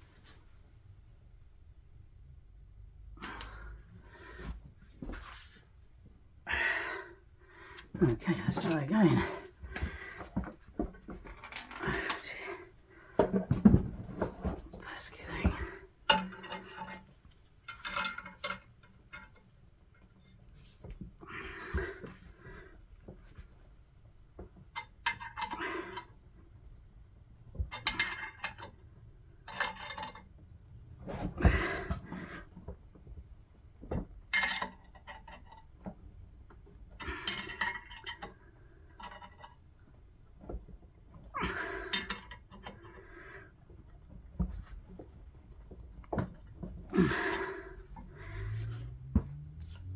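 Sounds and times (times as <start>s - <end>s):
metal tools clinking and scraping: 8.1s - 9.2s.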